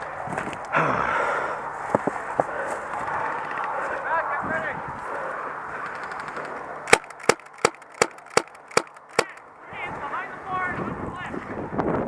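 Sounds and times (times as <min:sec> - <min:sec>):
airsoft gun shots: 0:06.9 - 0:09.4.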